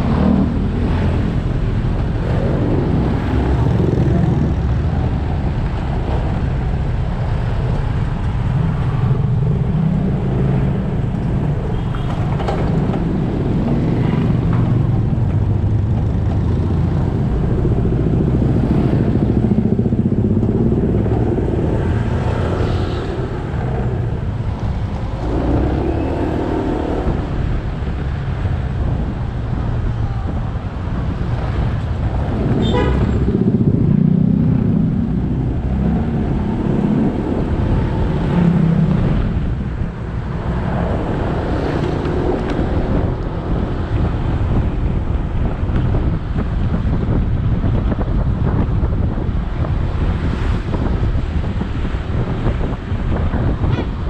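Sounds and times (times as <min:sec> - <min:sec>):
road and wind noise: 0:00.0 - 0:54.0
traffic passing: 0:00.0 - 0:54.0.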